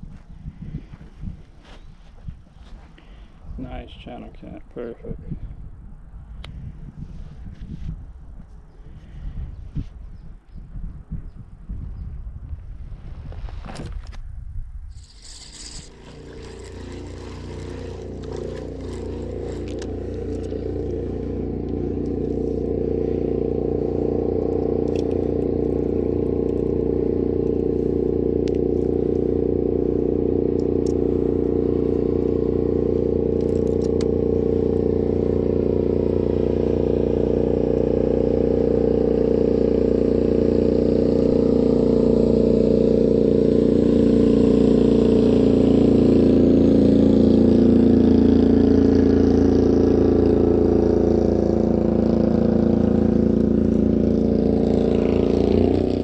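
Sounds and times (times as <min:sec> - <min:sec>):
clicks and scrapes of handling: 0:14.9 - 0:20.6
engine droning: 0:15.0 - 0:56.0.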